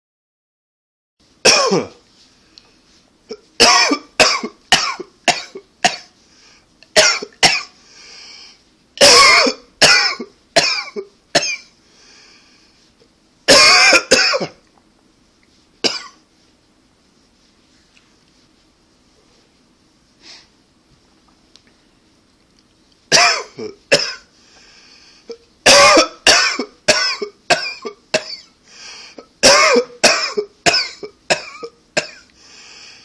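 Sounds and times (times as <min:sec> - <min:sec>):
man coughing hard: 0:01.4 - 0:02.0, 0:03.3 - 0:06.1, 0:07.0 - 0:07.7, 0:09.0 - 0:11.7, 0:13.5 - 0:14.6, 0:15.9 - 0:16.2, 0:23.1 - 0:24.3, 0:25.6 - 0:28.5, 0:29.4 - 0:32.3.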